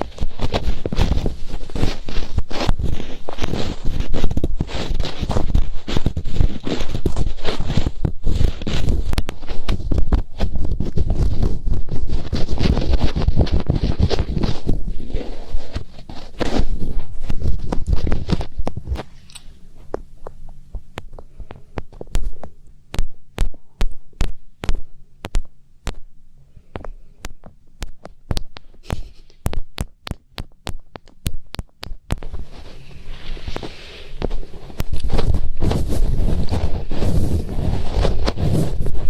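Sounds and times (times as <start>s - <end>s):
fingertips rubbing a microphone: 0.0s - 19.3s, 26.7s - 39.0s
sharp taps and clicks: 17.7s - 26.1s, 26.7s - 32.4s.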